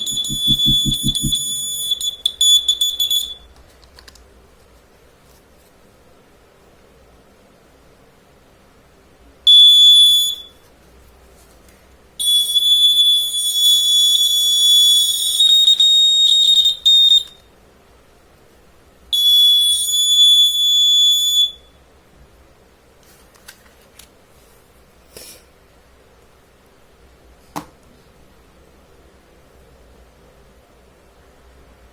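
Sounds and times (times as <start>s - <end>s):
fire alarm buzzer tone: 0.0s - 3.5s, 9.5s - 10.6s, 12.2s - 17.4s, 19.1s - 21.8s.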